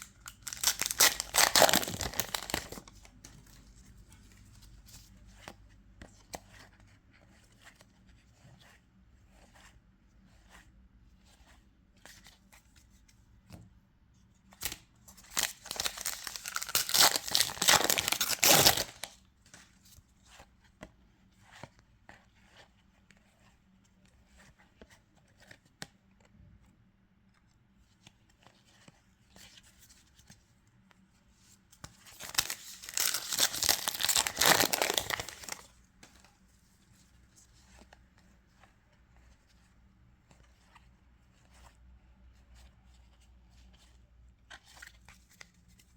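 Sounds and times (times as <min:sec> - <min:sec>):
wrappers tearing and crinkling: 0:00.0 - 0:02.9, 0:15.3 - 0:19.1, 0:32.2 - 0:35.6.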